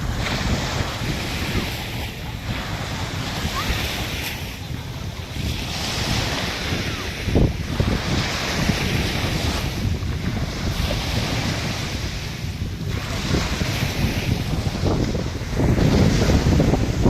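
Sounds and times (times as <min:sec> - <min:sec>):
sea waves washing ashore: 0:00.0 - 0:17.0
wind buffeting microphone: 0:00.0 - 0:17.0.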